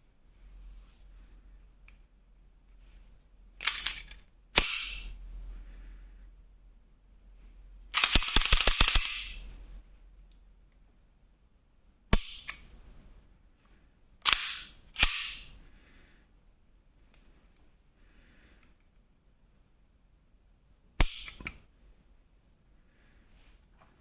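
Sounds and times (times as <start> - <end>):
pistol action clacking: 3.6 - 5.1, 8.0 - 9.4, 14.2 - 15.5.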